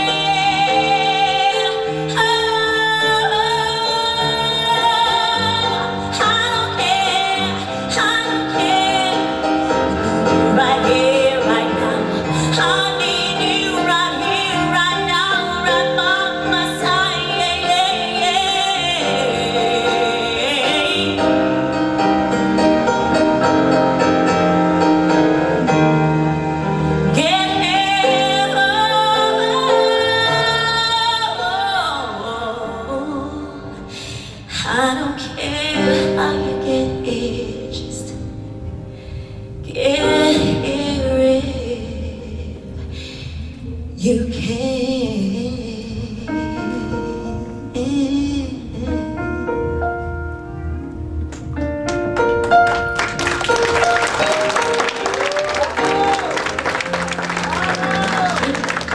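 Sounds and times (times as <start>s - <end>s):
woman singing with vibrato: 0.0s - 21.8s, 27.0s - 38.4s, 39.6s - 50.0s, 55.3s - 58.9s
instrumental accompaniment: 32.6s - 58.9s.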